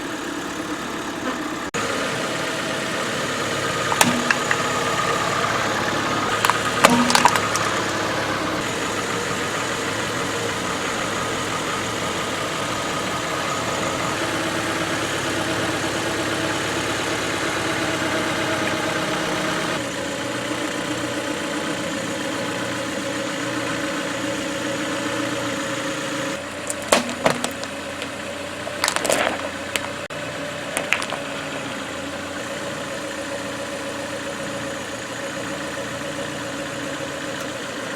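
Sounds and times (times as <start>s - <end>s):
car engine idling: 0.0s - 37.9s
objects cracking under tire: 3.8s - 5.3s, 6.3s - 8.6s, 26.6s - 30.1s, 30.7s - 31.4s.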